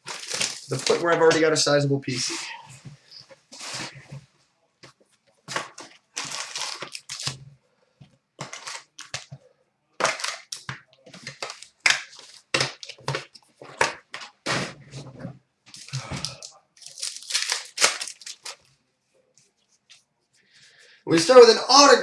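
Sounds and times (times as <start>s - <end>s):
wrapper tearing and crinkling: 0.0s - 1.5s, 5.5s - 7.4s, 8.4s - 9.3s, 10.0s - 14.0s, 15.8s - 18.7s.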